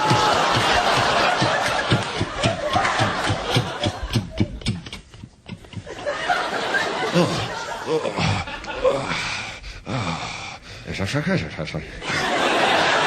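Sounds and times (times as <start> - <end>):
studio audience laughter: 0.0 - 4.7, 5.6 - 9.1, 11.6 - 13.0.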